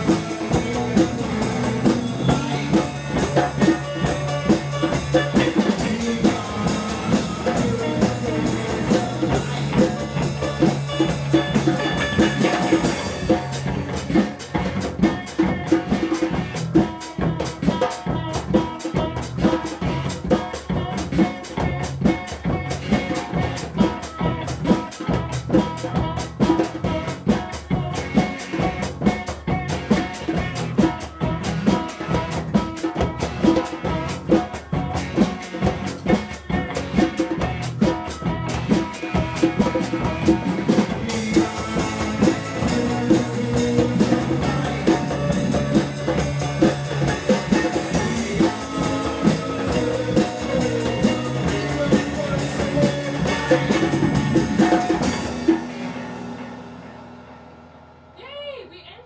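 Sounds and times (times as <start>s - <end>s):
bass tones: 0.0s - 17.6s, 33.1s - 58.2s
sustained guitar tones: 0.0s - 58.6s
drum kit beat: 0.0s - 58.8s.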